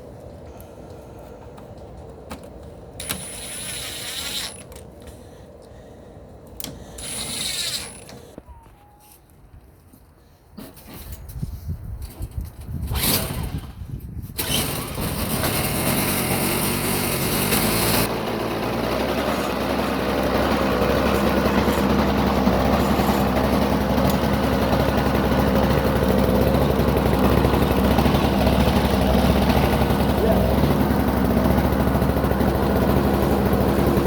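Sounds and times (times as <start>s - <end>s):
snowblower engine cranking: 3.0s - 5.0s, 6.6s - 8.4s, 12.8s - 34.0s
snowblower engine running: 14.4s - 34.0s.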